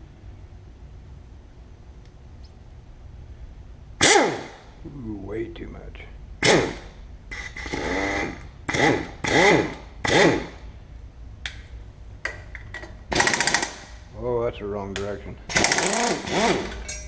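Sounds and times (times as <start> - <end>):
ratchet clicking rapidly: 13.1 - 13.9, 15.5 - 16.8.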